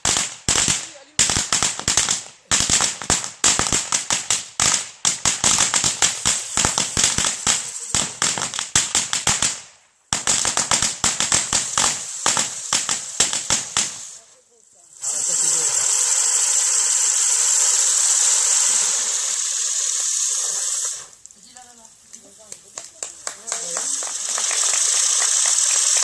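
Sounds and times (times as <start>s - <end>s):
firecracker string bangs: 0.0s - 14.2s.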